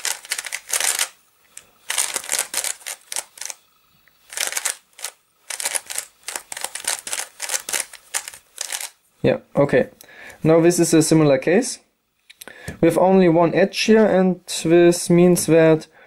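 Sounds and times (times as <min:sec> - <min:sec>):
puzzle cube clicking turns: 0:00.0 - 0:03.6, 0:04.2 - 0:09.0.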